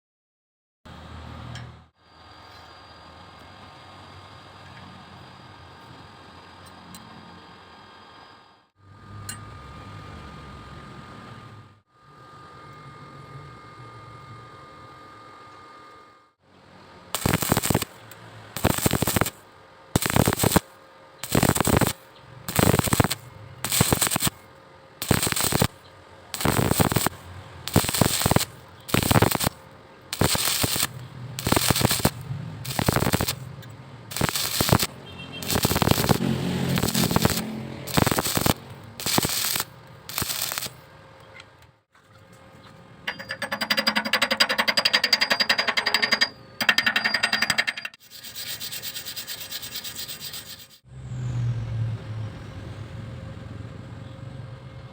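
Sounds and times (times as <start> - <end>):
crackling arc welding: 17.1 - 19.4, 20.0 - 24.4, 25.0 - 33.5, 34.1 - 40.8, 48.0 - 50.8
scratching on metal: 17.2 - 17.9, 18.6 - 19.3, 20.0 - 20.6, 21.2 - 24.3, 25.0 - 25.7, 26.4 - 29.6, 30.2 - 33.4, 34.1 - 40.7, 48.0 - 50.8.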